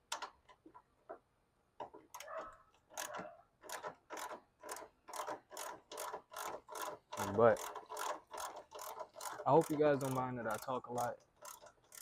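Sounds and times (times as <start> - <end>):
ratchet wrench clicking: 2.9 - 12.0.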